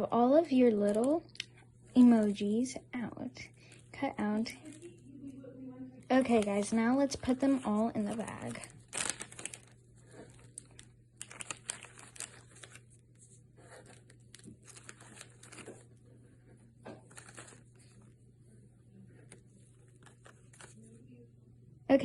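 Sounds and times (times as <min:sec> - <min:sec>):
plastic bag crinkling: 0:00.7 - 0:02.6, 0:03.4 - 0:05.1, 0:06.0 - 0:16.1, 0:16.9 - 0:18.2, 0:19.2 - 0:21.0.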